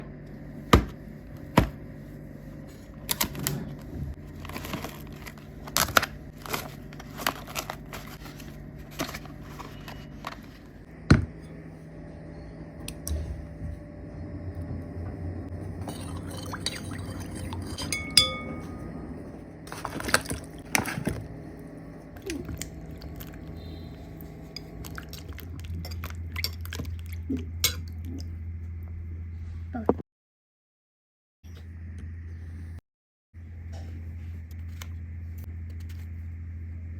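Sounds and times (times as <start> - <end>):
steady low hum: 0.0 - 30.0
utensils clinking on pans: 15.8 - 19.1.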